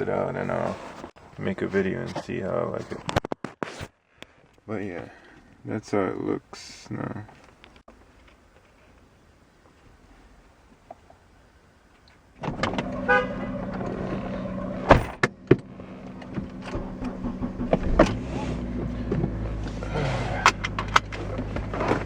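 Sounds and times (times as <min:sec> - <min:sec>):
car engine starting and idling: 0:12.4 - 0:22.0.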